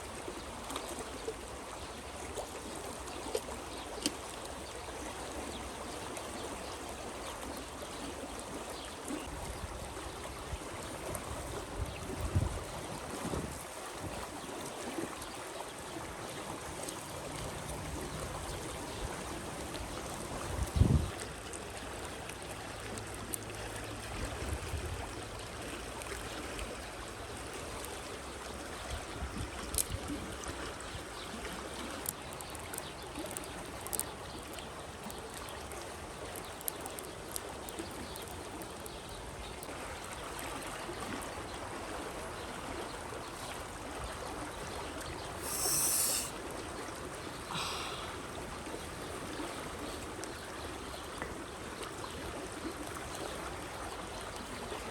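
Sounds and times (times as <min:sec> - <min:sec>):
small clicks and snaps: 0:29.6 - 0:30.0, 0:32.0 - 0:35.2, 0:36.2 - 0:39.0
river water rushing: 0:45.2 - 0:49.2
sharp hiss: 0:45.4 - 0:46.4.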